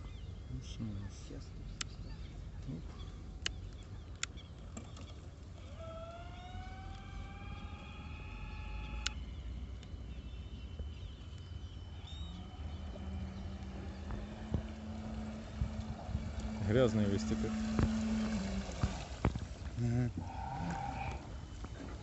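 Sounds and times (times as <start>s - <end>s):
low steady rumble: 0.0s - 22.0s
small electric motor whine: 5.0s - 22.0s
thin steady high tone: 5.7s - 18.8s.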